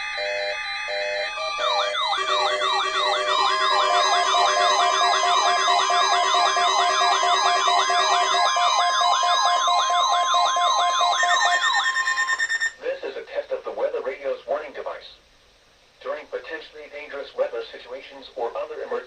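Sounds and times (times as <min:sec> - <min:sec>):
musical notes: 0:00.0 - 0:12.7
wailing siren sweeps: 0:00.0 - 0:12.8
long steady alert tone: 0:00.0 - 0:12.9.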